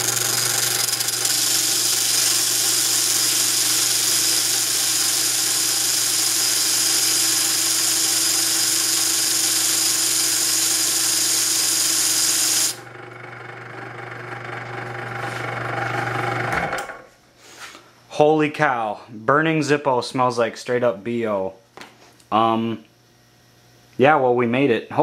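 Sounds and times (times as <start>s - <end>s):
grinding tool on metal: 0.0s - 17.0s
motor hum: 0.0s - 17.2s.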